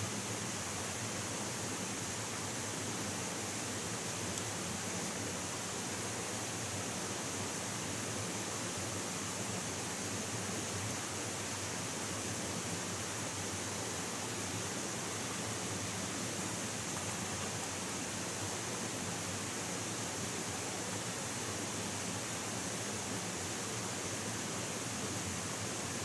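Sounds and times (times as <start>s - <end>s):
flowing water rushing: 0.1s - 26.0s.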